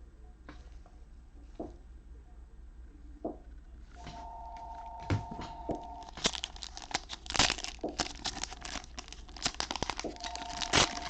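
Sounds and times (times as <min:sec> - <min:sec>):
cellophane wrapper tearing and crinkling: 0:05.9 - 0:11.0.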